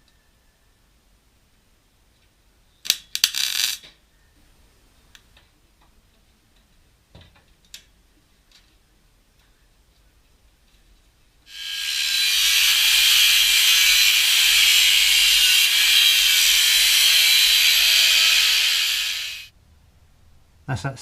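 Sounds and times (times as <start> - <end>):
welder crackling: 11.5 - 19.5.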